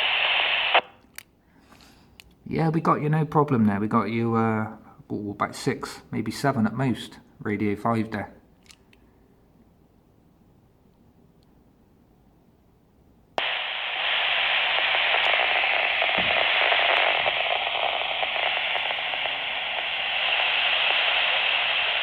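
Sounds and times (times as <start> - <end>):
radio static hiss: 0.0 - 0.9, 13.4 - 22.0.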